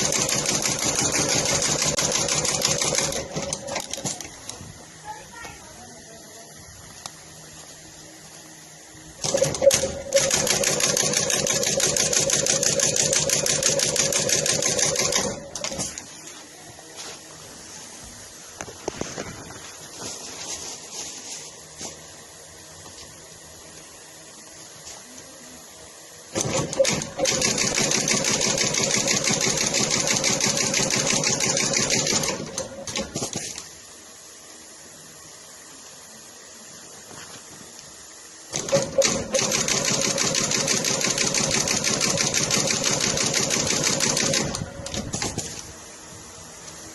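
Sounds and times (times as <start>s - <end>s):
sewing machine stitching: 0.0s - 4.1s, 9.2s - 16.0s, 26.3s - 33.6s, 38.5s - 45.4s.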